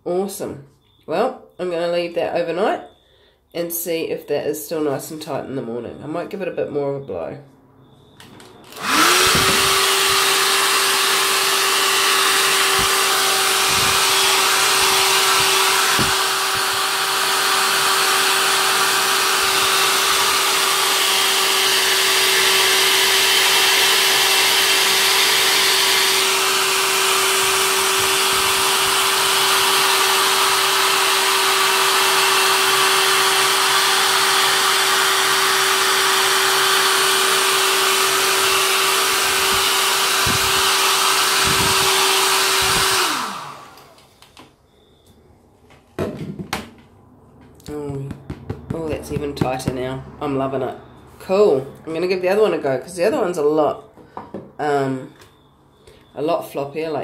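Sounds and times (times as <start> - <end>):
hair dryer blowing: 8.7 - 44.4.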